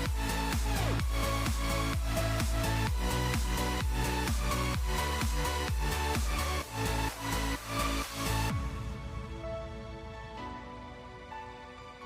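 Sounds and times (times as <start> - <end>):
electronic dance music: 0.0 - 8.9.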